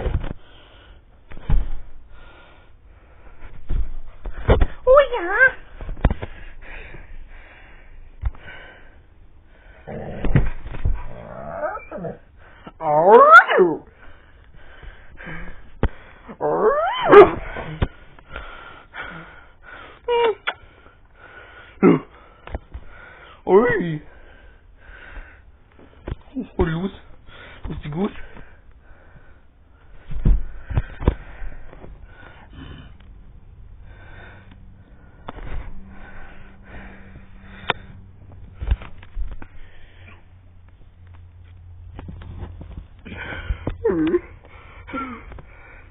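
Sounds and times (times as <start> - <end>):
dog whining: 11.0 - 13.9, 16.4 - 17.5.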